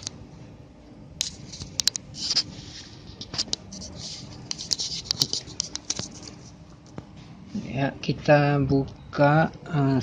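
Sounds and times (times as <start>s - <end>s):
rustling and scraping: 1.2s - 7.8s.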